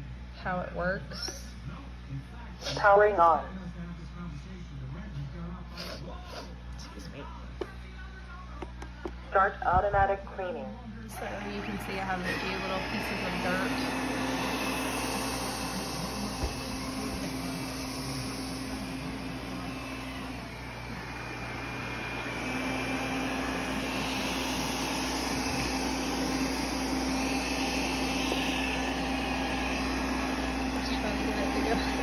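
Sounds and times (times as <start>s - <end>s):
robot vacuum suction whir: 11.1s - 32.0s.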